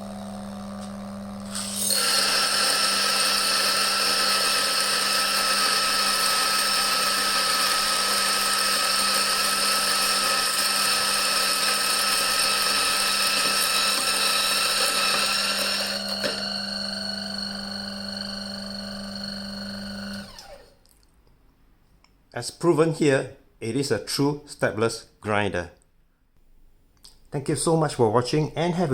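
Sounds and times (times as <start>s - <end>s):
coffee grinder grinding beans: 0.0s - 20.8s
grinder motor whine: 0.0s - 20.8s
grinder click: 1.6s - 16.6s.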